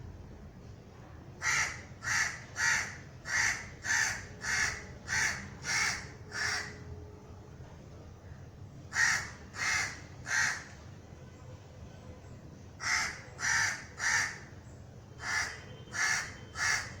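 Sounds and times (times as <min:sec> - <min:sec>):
crow cawing: 0:01.4 - 0:06.8, 0:08.9 - 0:10.7, 0:12.8 - 0:14.5, 0:15.2 - 0:17.0.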